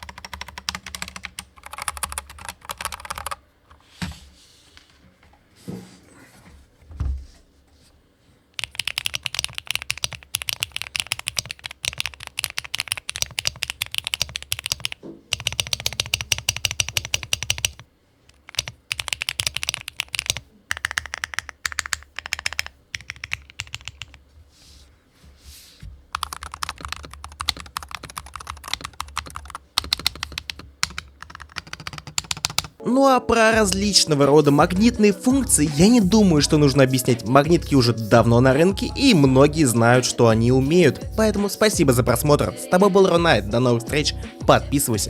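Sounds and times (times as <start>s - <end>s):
fast keyboard typing: 0.0s - 3.4s, 8.6s - 24.2s, 26.1s - 32.8s.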